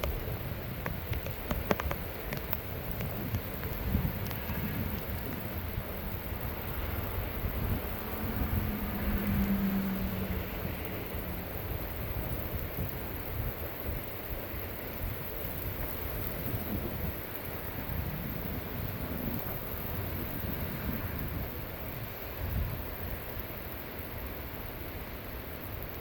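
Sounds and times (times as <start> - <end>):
torrential rain pouring: 0.0 - 26.0
low thunder rumbling: 2.9 - 14.2.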